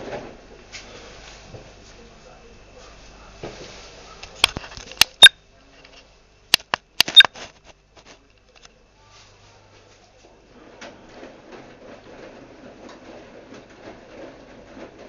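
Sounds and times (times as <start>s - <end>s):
sharp clicks and knocks: 6.6s - 7.4s.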